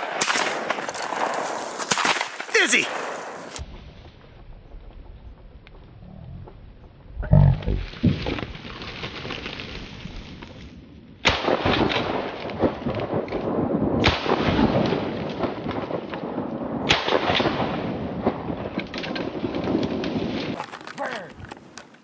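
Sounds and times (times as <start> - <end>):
shotgun shots: 0.0 - 3.6.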